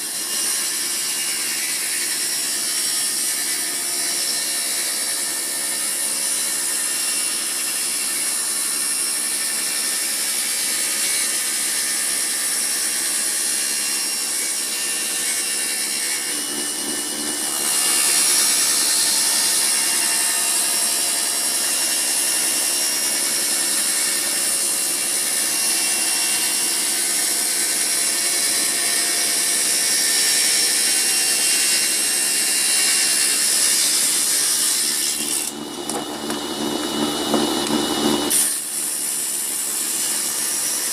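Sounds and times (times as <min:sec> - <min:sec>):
table saw cutting wood: 0:00.0 - 0:40.9.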